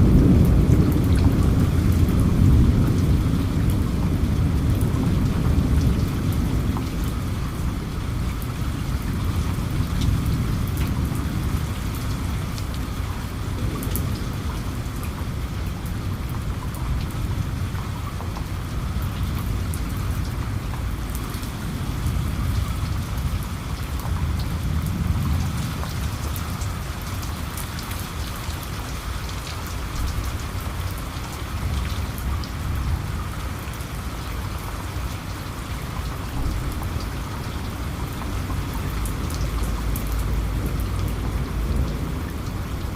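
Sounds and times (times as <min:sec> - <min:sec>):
steady rain falling: 0:00.0 - 0:42.9
raindrop ticks: 0:02.8 - 0:07.2, 0:09.4 - 0:21.6, 0:22.3 - 0:32.6, 0:35.9 - 0:42.9.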